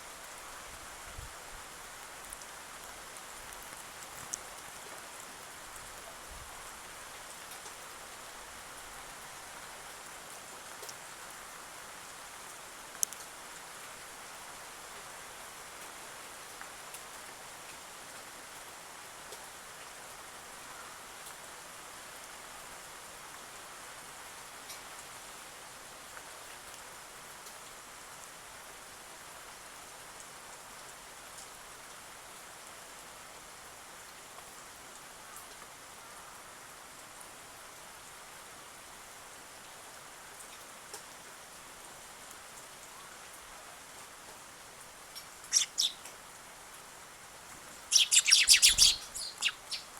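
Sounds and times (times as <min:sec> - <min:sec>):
light rain pattering: 0:00.0 - 0:49.9
faint ticks: 0:02.2 - 0:05.9, 0:12.9 - 0:13.3.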